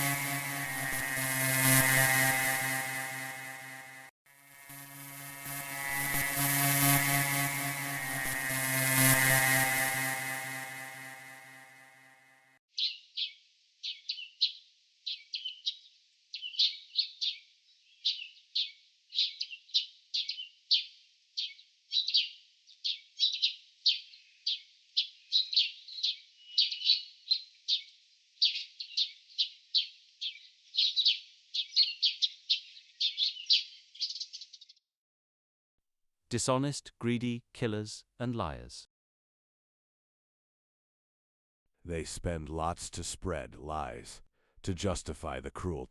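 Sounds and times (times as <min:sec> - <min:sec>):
bird chirping: 0:12.7 - 0:34.8.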